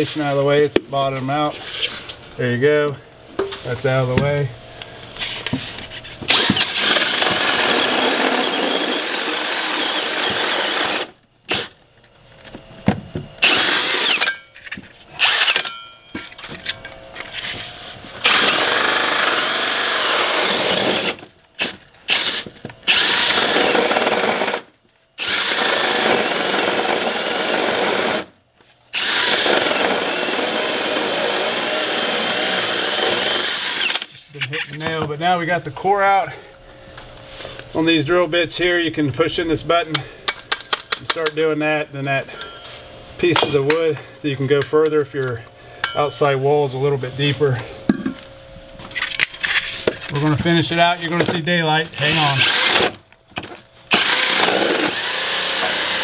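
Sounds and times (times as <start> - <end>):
cordless drill cutting through wall: 6.2 - 11.8, 13.4 - 14.3, 15.1 - 15.7, 18.2 - 34.1, 52.0 - 53.0, 53.9 - 56.0.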